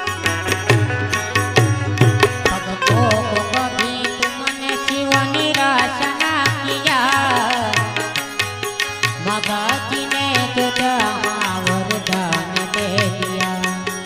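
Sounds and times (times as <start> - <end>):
sliding lead melody: 0.0 - 5.6
hand drum beat: 0.0 - 14.0.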